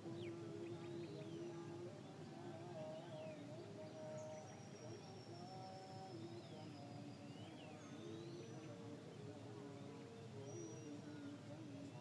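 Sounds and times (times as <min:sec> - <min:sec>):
faint distant melody: 0:00.0 - 0:12.0
low background noise: 0:00.0 - 0:12.0
wild birds chirping and whistling: 0:00.0 - 0:12.0.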